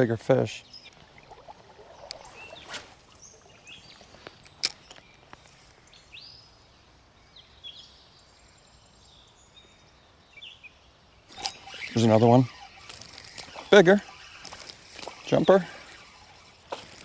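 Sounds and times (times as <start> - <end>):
running water hiss: 0.0 - 6.2, 11.3 - 17.0
birds chirping and whistling: 0.6 - 6.5, 11.2 - 17.0
sharp clicks: 11.3 - 17.0.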